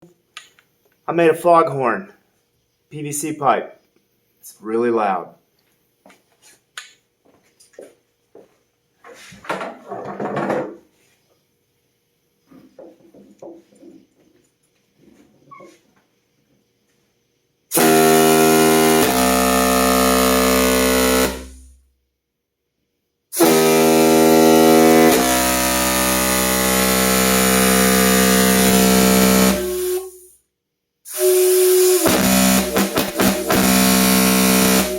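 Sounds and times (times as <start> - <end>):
homemade foghorn blasts: 17.7 - 21.8, 23.4 - 30.3, 31.1 - 34.9.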